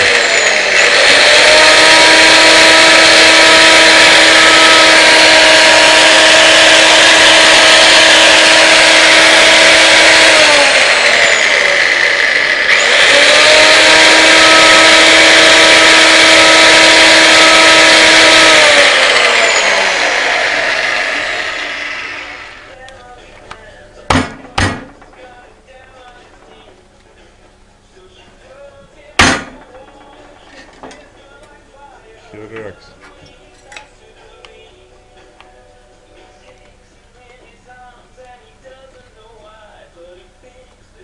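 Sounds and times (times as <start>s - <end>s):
electric chainsaw whining: 0.0s - 22.8s.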